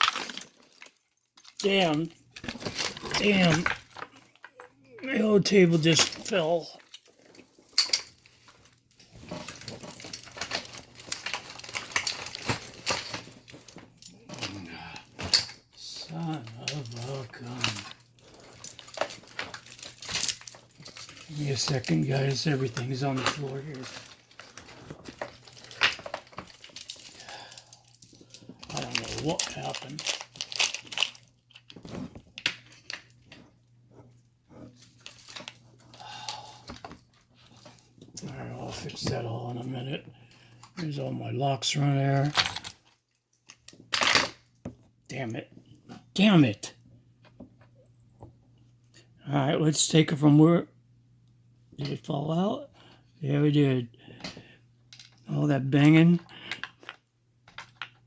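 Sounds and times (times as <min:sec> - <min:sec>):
metal padlocks and tools clinking: 0:00.0 - 0:04.7
padlocks and tools clattering: 0:00.0 - 0:08.3, 0:09.0 - 0:31.8, 0:42.2 - 0:44.4.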